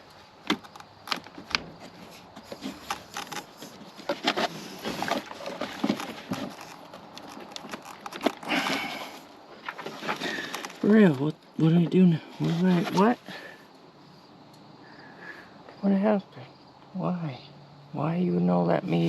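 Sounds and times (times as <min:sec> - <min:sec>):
car parts clicking and rattling: 0:00.0 - 0:08.6.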